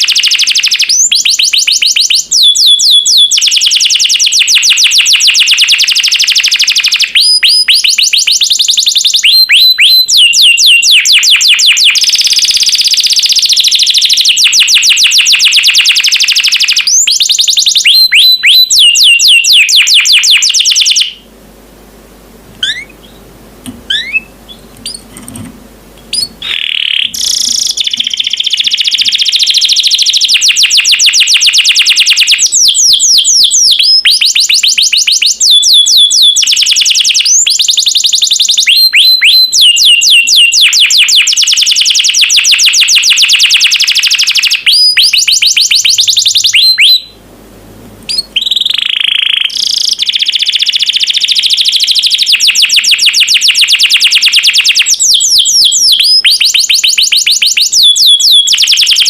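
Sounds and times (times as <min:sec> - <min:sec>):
canary singing rolling trills: 0:00.0 - 0:21.3, 0:22.6 - 0:47.2, 0:48.1 - 0:59.0
faint chirps: 0:22.6 - 0:30.4.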